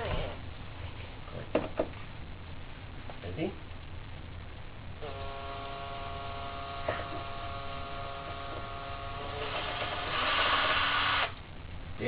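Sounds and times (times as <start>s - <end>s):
small electric motor whine: 5.0s - 11.4s.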